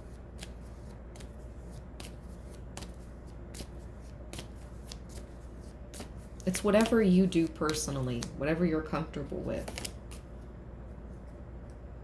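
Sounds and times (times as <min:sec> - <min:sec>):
cards shuffled by hand: 0:00.0 - 0:08.4, 0:09.6 - 0:10.4.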